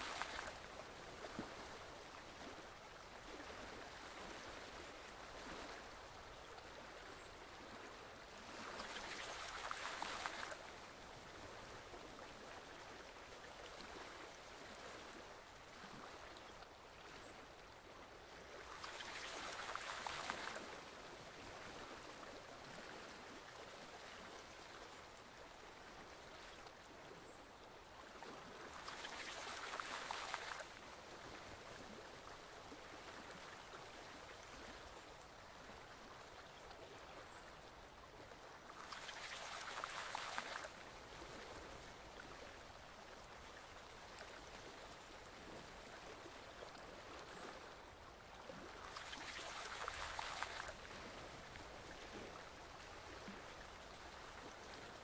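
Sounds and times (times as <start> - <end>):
stream flowing over rocks: 0.0 - 6.4, 28.4 - 35.4, 37.2 - 55.0
rush of water: 0.0 - 55.0.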